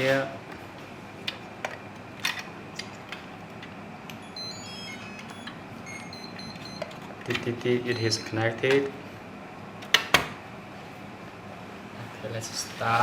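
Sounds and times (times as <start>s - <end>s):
high electronic beeps: 4.2s - 6.9s.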